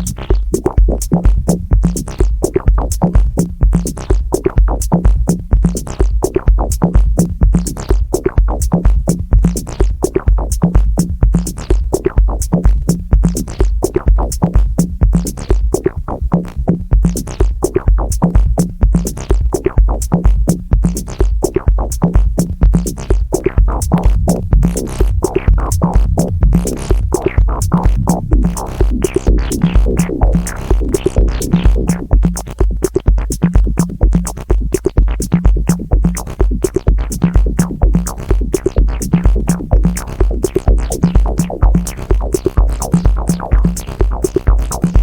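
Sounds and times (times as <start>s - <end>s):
hi-hat ticks: 0.0s - 15.9s, 16.7s - 45.0s
kick drum beat: 0.0s - 45.0s
low synth bass line: 21.7s - 32.8s.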